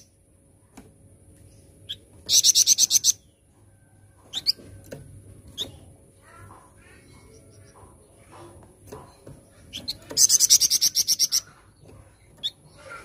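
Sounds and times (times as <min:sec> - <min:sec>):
songbird trilling: 0:01.8 - 0:03.3, 0:09.6 - 0:13.0.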